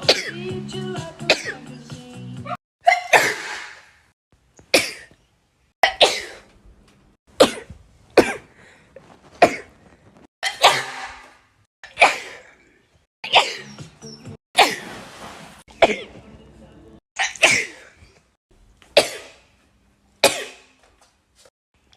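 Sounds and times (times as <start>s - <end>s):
person sneezing: 2.9s - 3.9s, 10.4s - 11.3s, 11.9s - 12.5s, 17.2s - 18.0s, 19.0s - 19.4s, 20.2s - 20.7s.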